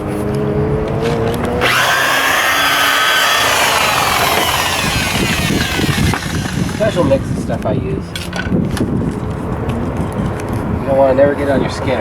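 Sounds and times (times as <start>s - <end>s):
power tool whine: 1.1s - 7.5s.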